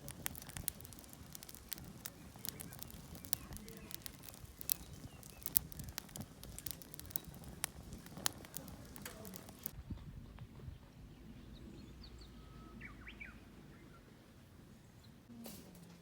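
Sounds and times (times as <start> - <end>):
wood fire crackling: 0.0 - 9.8.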